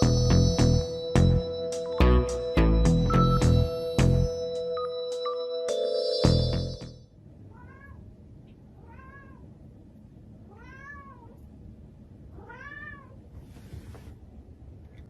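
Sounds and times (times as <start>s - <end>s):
cat meowing: 7.5s - 8.0s, 8.8s - 9.5s, 10.5s - 11.4s, 12.4s - 13.2s.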